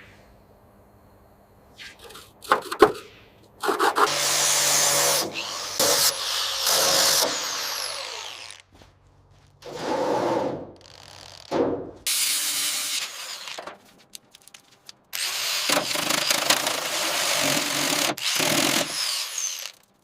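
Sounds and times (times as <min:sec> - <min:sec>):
handheld power tool running: 0:04.0 - 0:08.6, 0:15.1 - 0:19.9.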